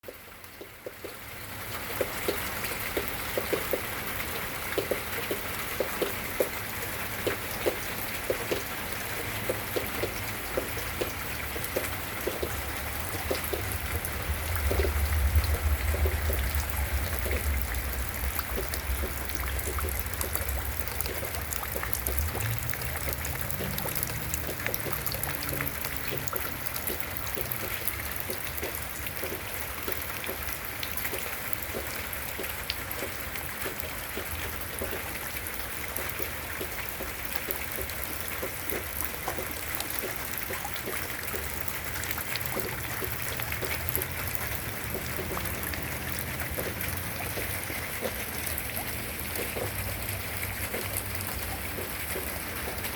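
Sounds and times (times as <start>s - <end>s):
rain patter: 0.0s - 52.9s
low rumble: 13.7s - 24.7s.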